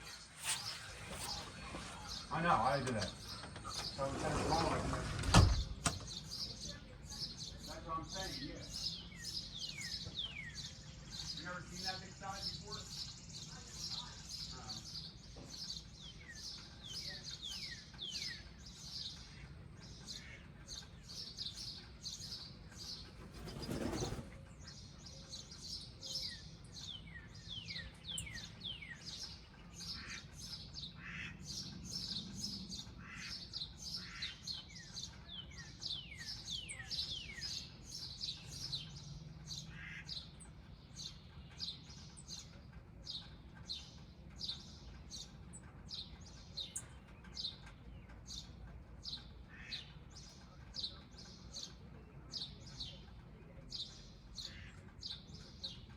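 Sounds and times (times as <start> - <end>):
loud rustling: 0.0 - 5.6
small birds chirping: 0.0 - 55.9.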